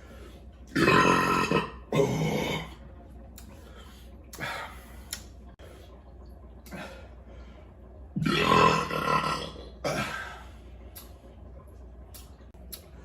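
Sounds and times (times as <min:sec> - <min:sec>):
loud drawn-out burp: 0:00.7 - 0:02.8, 0:08.2 - 0:10.2.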